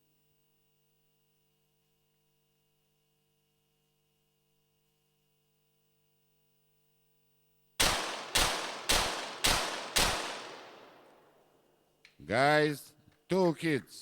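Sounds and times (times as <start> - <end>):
pistol shots ringing: 7.8 - 11.5.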